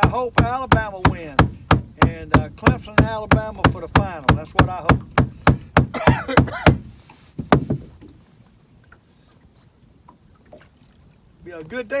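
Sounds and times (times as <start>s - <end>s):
man's voice: 0.0s - 5.0s
water lapping against boat hull: 0.0s - 12.0s.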